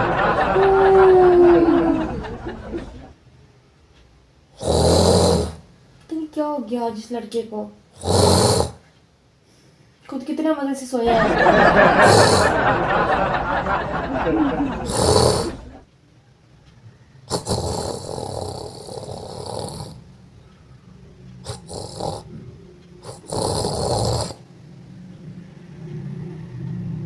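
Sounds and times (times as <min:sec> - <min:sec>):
man fake snoring: 0:00.0 - 0:03.0, 0:04.6 - 0:05.7, 0:08.0 - 0:08.9, 0:11.6 - 0:15.8, 0:17.3 - 0:20.1, 0:21.4 - 0:24.5.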